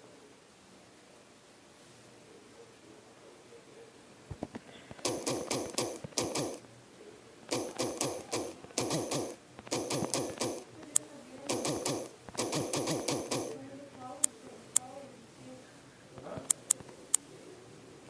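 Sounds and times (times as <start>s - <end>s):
touchscreen keyboard clicks: 4.3s - 6.6s, 7.5s - 13.6s, 16.4s - 17.0s
sharp tick: 5.0s - 6.6s, 7.5s - 13.6s.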